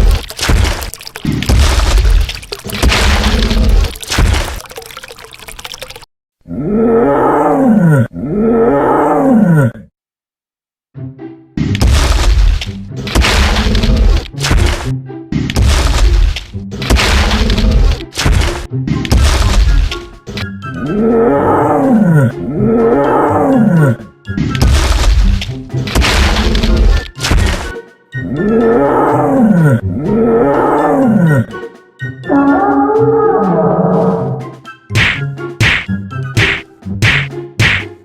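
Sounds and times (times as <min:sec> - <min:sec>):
monster roars: 0:06.4 - 0:09.9, 0:20.8 - 0:24.0, 0:28.3 - 0:31.5, 0:32.3 - 0:34.4
dramatic music: 0:11.0 - 0:38.0.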